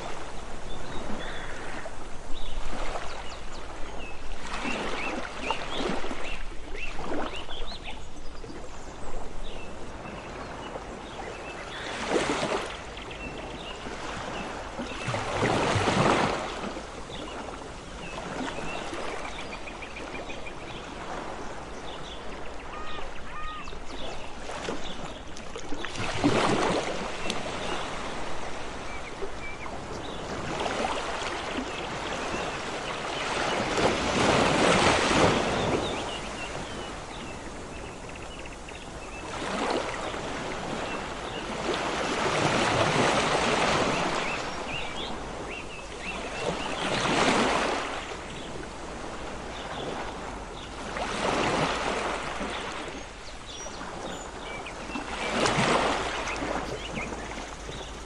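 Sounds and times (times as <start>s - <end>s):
faint bird calls: 0.0s - 3.5s, 18.2s - 25.1s
ocean waves washing in: 0.0s - 7.9s.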